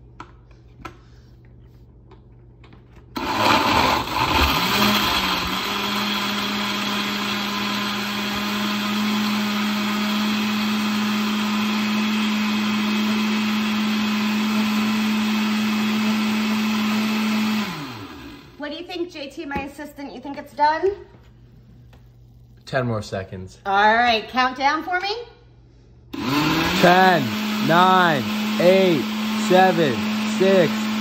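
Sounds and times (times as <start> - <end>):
blender crushing ice: 3.2 - 18.6, 26.2 - 31.0.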